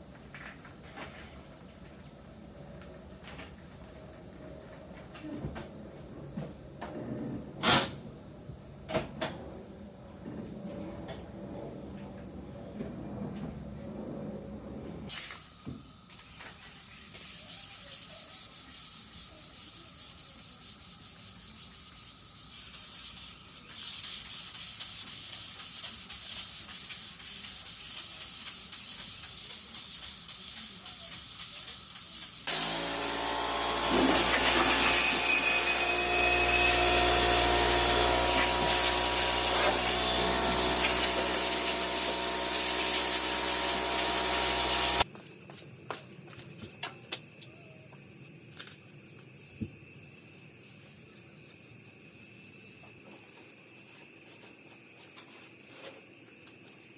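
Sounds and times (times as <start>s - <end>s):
faint rubbing and brushing: 16.3s - 32.3s
machine humming: 32.5s - 45.0s.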